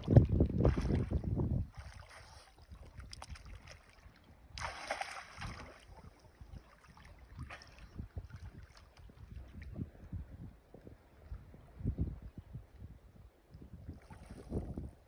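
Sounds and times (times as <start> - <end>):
wind on microphone: 0.0 - 3.5, 4.4 - 15.0
water lapping: 0.0 - 9.9.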